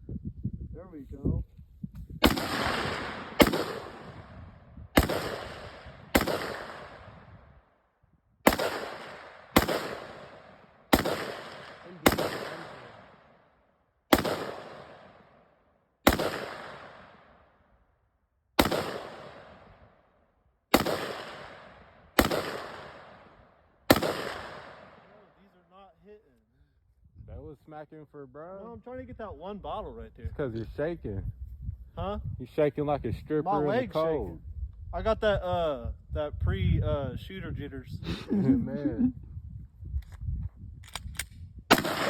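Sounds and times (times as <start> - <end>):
gunshots echoing: 2.2 - 7.3, 8.4 - 13.5, 14.1 - 17.4, 18.6 - 19.9, 20.7 - 25.4, 41.7 - 42.0.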